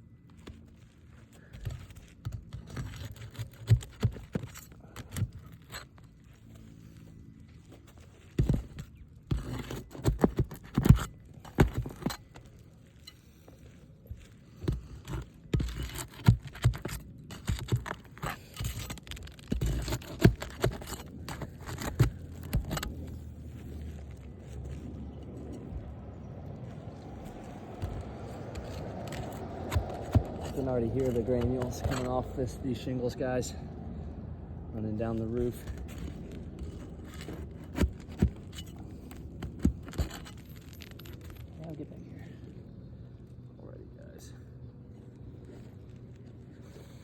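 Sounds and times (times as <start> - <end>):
hand tool scraping roof shingles: 0.2 - 25.9, 27.0 - 33.1, 35.0 - 41.6.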